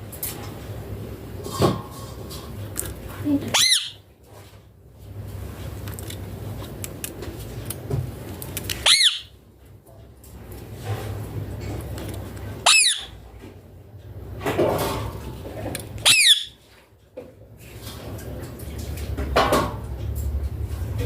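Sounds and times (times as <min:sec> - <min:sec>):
parrot shrill screeches: 0:03.5 - 0:04.0, 0:08.8 - 0:09.3, 0:12.6 - 0:13.2, 0:16.0 - 0:16.6.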